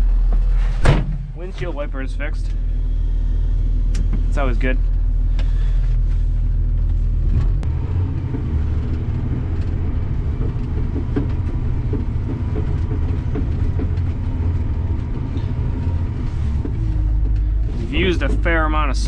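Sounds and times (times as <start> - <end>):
truck engine rumbling: 0.0 - 19.0
light knocks and rattles: 6.9 - 19.0.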